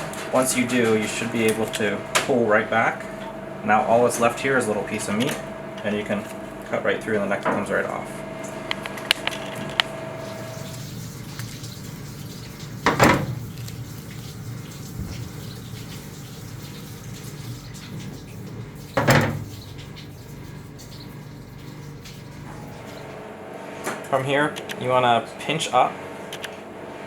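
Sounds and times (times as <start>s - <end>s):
water running from tap: 10.2s - 23.2s.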